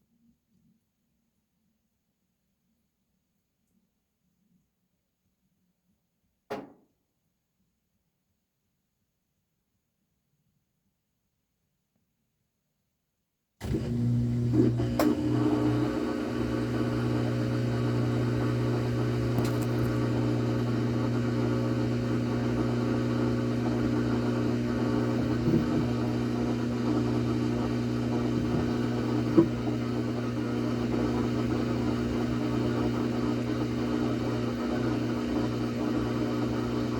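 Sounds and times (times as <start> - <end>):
motor running with low hum: 13.6 - 36.9.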